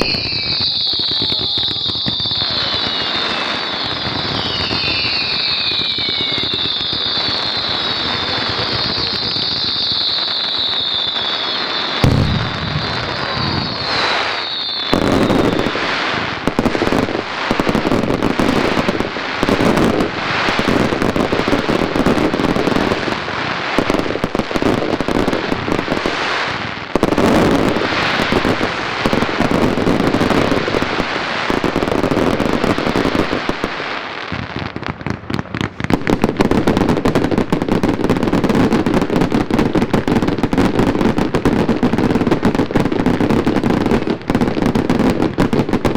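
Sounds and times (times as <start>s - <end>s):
firework whistle: 0.0s - 34.4s
fireworks bangs and crackles: 0.0s - 45.9s.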